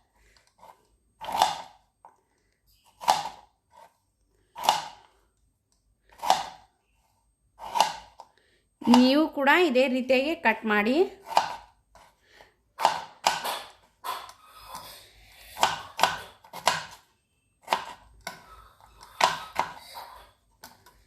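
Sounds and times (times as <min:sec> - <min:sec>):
knife cutting potato on board: 0:00.5 - 0:01.8, 0:02.9 - 0:03.9, 0:04.6 - 0:05.1, 0:06.1 - 0:06.7, 0:07.6 - 0:09.1, 0:11.1 - 0:17.0, 0:17.6 - 0:20.8.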